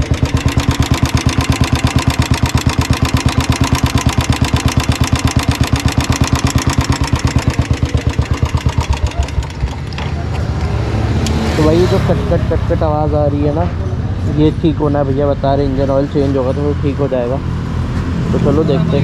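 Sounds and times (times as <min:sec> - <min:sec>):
motorcycle engine idling: 0:00.0 - 0:10.8
engine ticking noise: 0:00.0 - 0:17.4.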